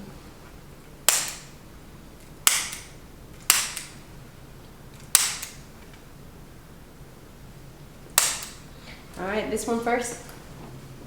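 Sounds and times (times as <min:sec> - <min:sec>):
adjusting instrument snapping: 0:01.1 - 0:01.5, 0:02.2 - 0:04.0, 0:04.9 - 0:06.0, 0:08.1 - 0:08.6.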